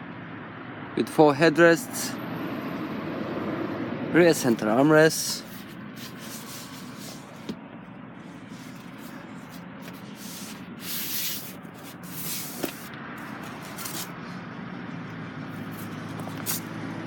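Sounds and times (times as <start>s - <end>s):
rustling and rubbing: 5.3s - 7.6s, 8.2s - 14.2s, 15.6s - 16.7s.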